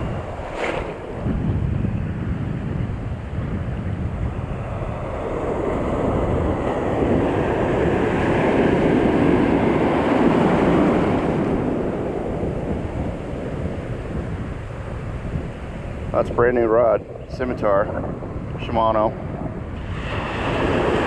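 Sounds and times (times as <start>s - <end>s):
ocean wave breaking: 0.0s - 1.3s, 4.6s - 16.0s, 19.7s - 21.0s
wind buffeting microphone: 0.0s - 21.0s.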